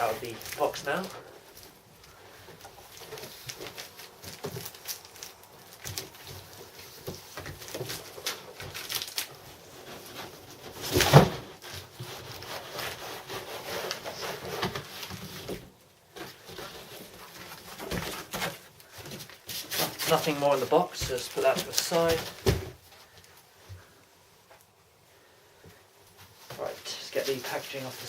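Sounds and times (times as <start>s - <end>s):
cardboard scraping and rustling: 0.0s - 23.2s
loud scrape or thump: 10.7s - 11.7s.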